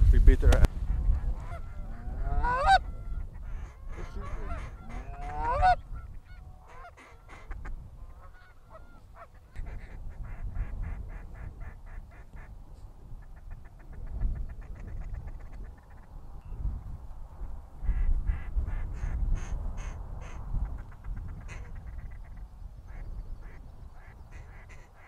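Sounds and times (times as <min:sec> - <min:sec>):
low wind rumble: 0:00.0 - 0:25.0
ducks quacking: 0:00.9 - 0:12.5, 0:13.1 - 0:16.1, 0:17.8 - 0:25.0
geese honking: 0:00.9 - 0:12.5, 0:17.9 - 0:25.0.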